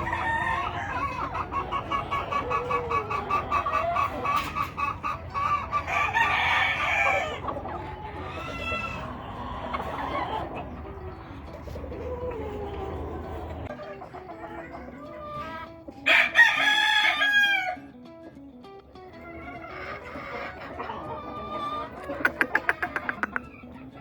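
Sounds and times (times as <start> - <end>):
rooster crowing: 0.0 - 1.2, 5.9 - 7.4, 16.1 - 17.8
chickens clucking: 0.0 - 24.0.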